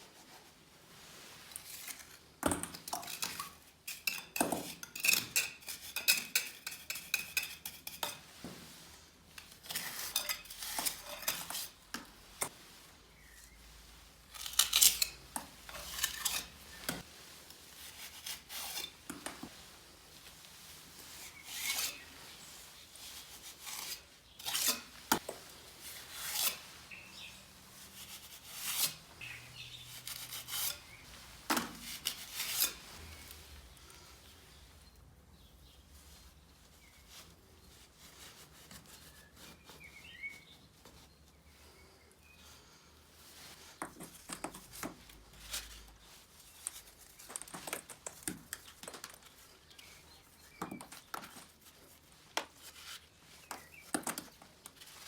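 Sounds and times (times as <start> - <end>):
metal trowel scraping mortar: 2.9 - 8.3, 9.4 - 11.8, 14.3 - 17.1, 17.8 - 19.6, 23.4 - 27.3, 28.0 - 33.4.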